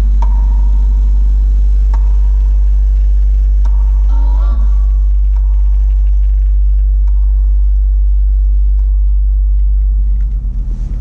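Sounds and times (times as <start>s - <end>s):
loud deep bass note from subwoofer: 0.0s - 5.4s.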